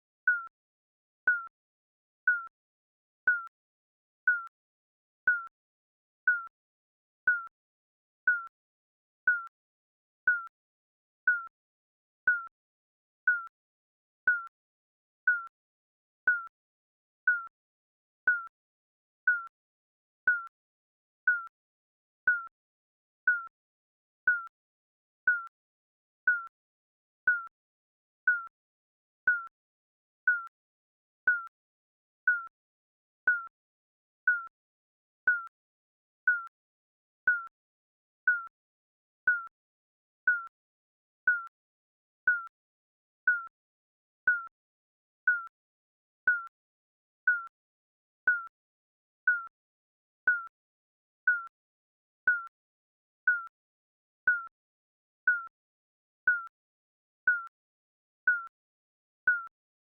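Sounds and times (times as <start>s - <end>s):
digital timer beeping: 0.3s - 0.5s, 1.3s - 1.5s, 2.3s - 2.5s, 3.3s - 3.5s, 4.3s - 4.5s, 5.3s - 5.5s, 6.3s - 6.5s, 7.3s - 7.5s, 8.3s - 8.5s, 9.3s - 9.5s, 10.3s - 10.5s, 11.3s - 11.5s, 12.3s - 12.5s, 13.3s - 13.5s, 14.3s - 14.5s, 15.3s - 15.5s, 16.3s - 16.5s, 17.3s - 17.5s, 18.3s - 18.5s, 19.3s - 19.5s, 20.3s - 20.5s, 21.3s - 21.5s, 22.3s - 22.5s, 23.3s - 23.5s, 24.3s - 24.5s, 25.3s - 25.5s, 26.3s - 26.5s, 27.3s - 27.5s, 28.3s - 28.5s, 29.3s - 29.5s, 30.3s - 30.5s, 31.3s - 31.5s, 32.3s - 32.5s, 33.3s - 33.5s, 34.3s - 34.5s, 35.3s - 35.5s, 36.3s - 36.5s, 37.3s - 37.5s, 38.3s - 38.5s, 39.3s - 39.5s, 40.3s - 40.5s, 41.3s - 41.5s, 42.3s - 42.5s, 43.3s - 43.5s, 44.3s - 44.5s, 45.3s - 45.5s, 46.3s - 46.5s, 47.3s - 47.5s, 48.3s - 48.5s, 49.3s - 49.5s, 50.3s - 50.5s, 51.3s - 51.5s, 52.3s - 52.5s, 53.3s - 53.5s, 54.3s - 54.5s, 55.3s - 55.5s, 56.3s - 56.5s, 57.3s - 57.5s, 58.3s - 58.5s, 59.3s - 59.5s.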